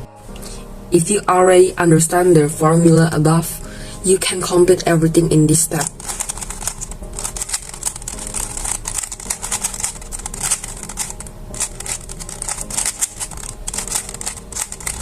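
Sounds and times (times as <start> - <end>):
puzzle cube layers clicking: 5.8 - 15.0.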